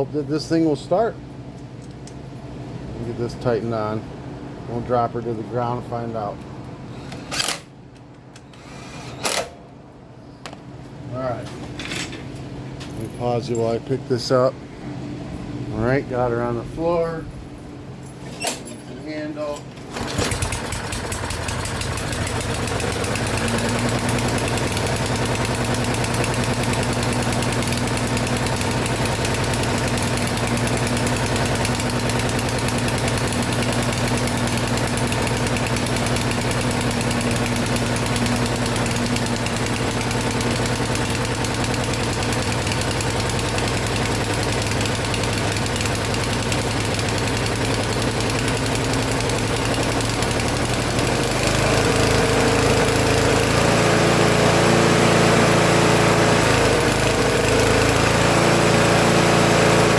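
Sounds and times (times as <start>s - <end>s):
mower engine running: 19.8s - 59.9s.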